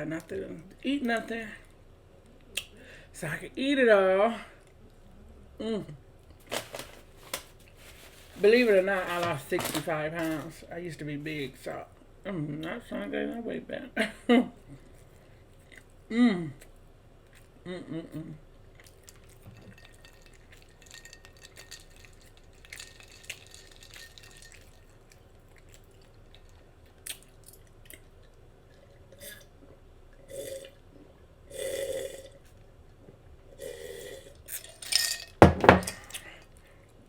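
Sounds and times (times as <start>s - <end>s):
wet mouth eating sounds: 18.6s - 32.6s.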